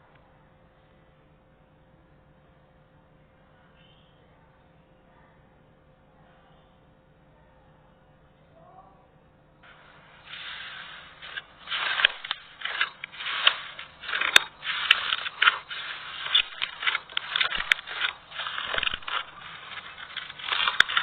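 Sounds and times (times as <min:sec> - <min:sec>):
slime crackling and scraping: 0:09.7 - 0:21.0
sharp clicks: 0:10.2 - 0:21.0.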